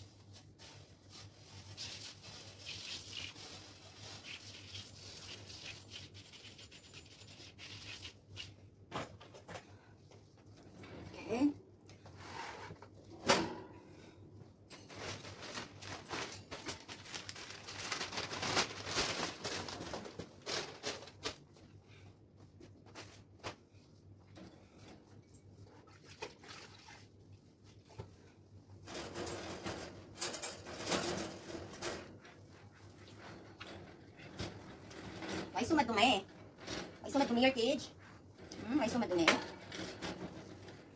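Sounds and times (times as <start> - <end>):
bird cage being cleaned: 0.1 - 8.6.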